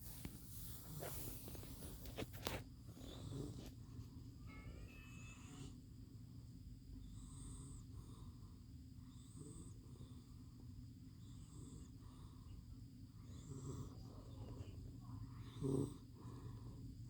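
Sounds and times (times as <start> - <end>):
pet snoring softly: 0.0 - 4.0, 7.0 - 10.5, 11.1 - 17.0.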